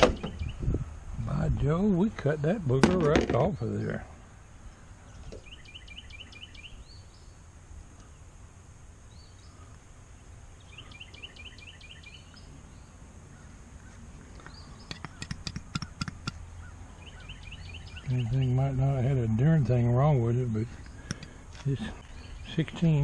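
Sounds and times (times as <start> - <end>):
songbird chirping: 0.0 - 23.0
sharp clicks and taps: 14.4 - 16.4.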